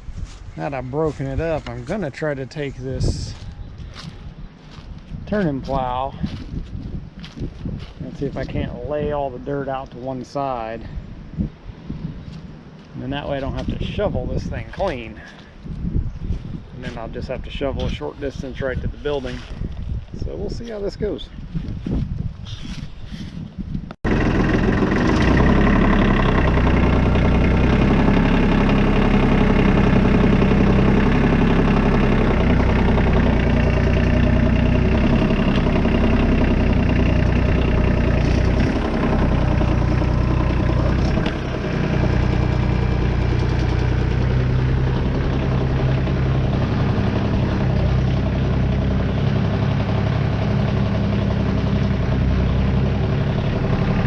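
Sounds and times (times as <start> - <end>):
tractor diesel engine under load: 0.0 - 4.1, 4.7 - 6.6, 7.2 - 11.1, 13.0 - 15.5, 24.0 - 54.0.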